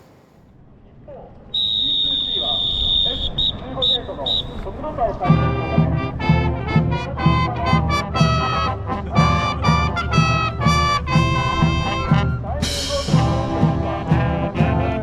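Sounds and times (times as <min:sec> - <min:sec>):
swing jazz with brass horns: 0:05.3 - 0:15.0.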